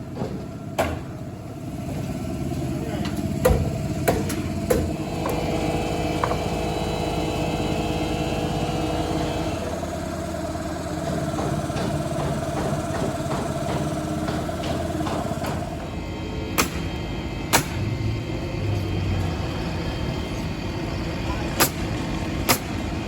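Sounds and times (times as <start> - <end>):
engine running steadily: 0.0 - 23.0
sharp knocks: 3.4 - 5.4.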